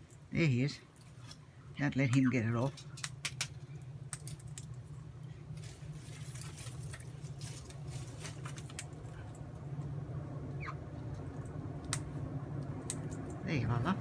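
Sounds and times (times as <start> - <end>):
low hum: 0.0 - 14.0
beaks clicking and tapping seed: 2.1 - 4.8, 11.8 - 13.4.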